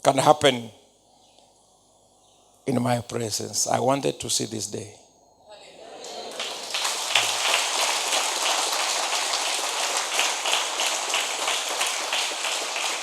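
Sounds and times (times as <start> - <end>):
crowd applauding: 5.8 - 13.0.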